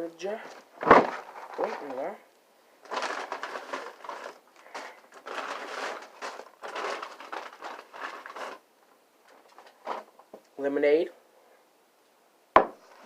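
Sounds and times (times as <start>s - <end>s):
food packaging crinkling: 0.4s - 2.1s, 2.8s - 10.4s.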